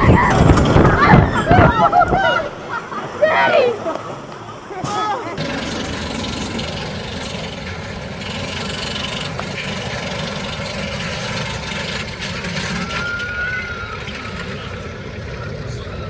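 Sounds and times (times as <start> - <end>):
wind rushing over microphone: 0.0 - 3.7
roller coaster on track: 0.0 - 16.0.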